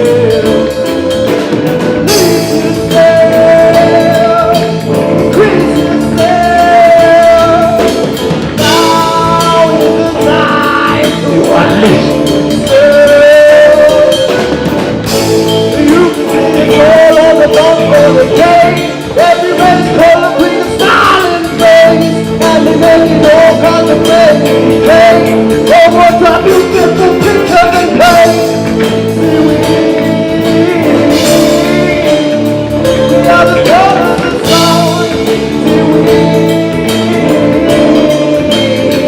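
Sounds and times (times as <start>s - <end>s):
band music with drum kit: 0.0s - 39.0s
person singing: 0.0s - 39.0s.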